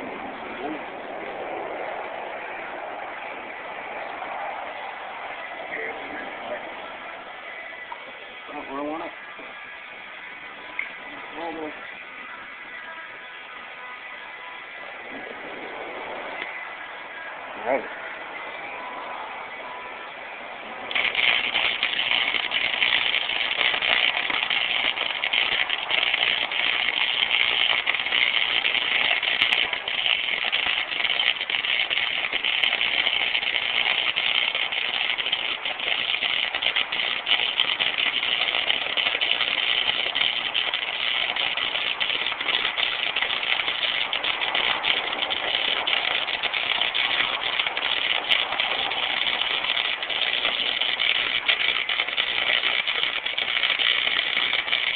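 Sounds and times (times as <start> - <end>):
arc welding crackling hiss: 20.9 - 54.9.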